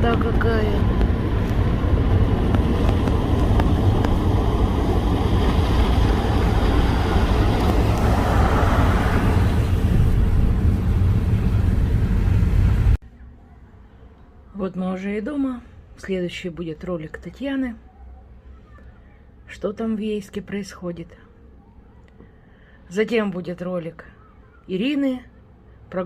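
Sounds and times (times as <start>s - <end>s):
car road noise inside cabin: 0.0s - 13.0s.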